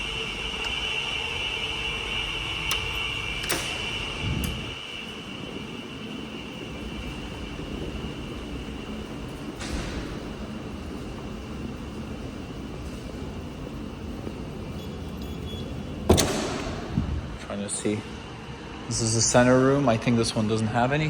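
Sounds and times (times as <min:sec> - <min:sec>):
high-pitched whine: 0:00.0 - 0:13.3.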